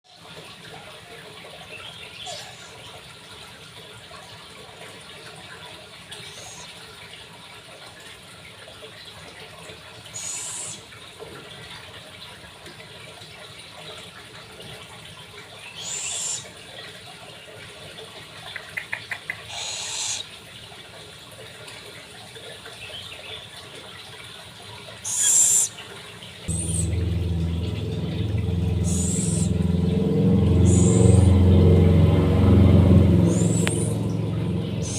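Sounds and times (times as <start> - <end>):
owl hissing screeches: 10.2 - 10.8, 15.8 - 16.4, 19.5 - 20.2, 25.0 - 25.7, 28.9 - 29.5, 30.6 - 31.3, 33.3 - 34.0.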